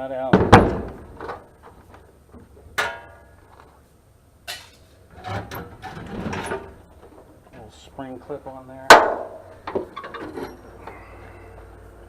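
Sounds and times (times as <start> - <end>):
metal scraping: 4.5 - 7.2.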